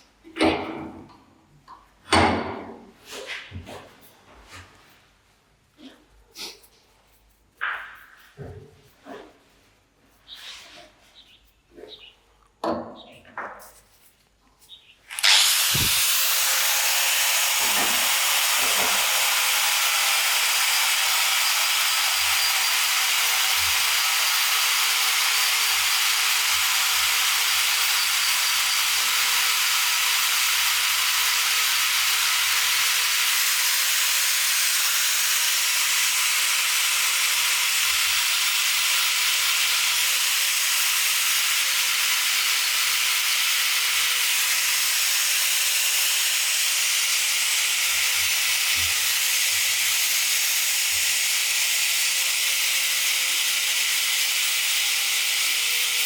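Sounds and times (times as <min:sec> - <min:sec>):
compressed air hissing: 0:15.4 - 0:16.1.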